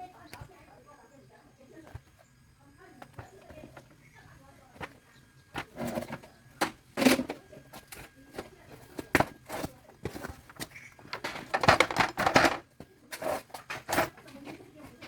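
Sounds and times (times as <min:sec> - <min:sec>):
fruit rustling: 0:07.2 - 0:15.0.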